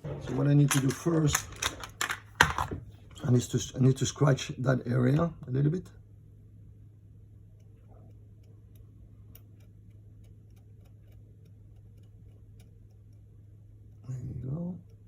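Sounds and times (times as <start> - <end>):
steady low hum: 0.0 - 15.0
small blade scratching circuit board: 9.3 - 13.2.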